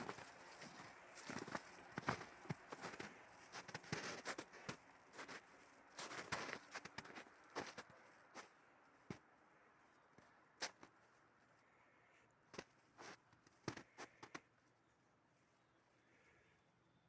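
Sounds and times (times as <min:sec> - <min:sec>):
footsteps crunching in snow: 0:00.0 - 0:09.2, 0:12.6 - 0:14.4.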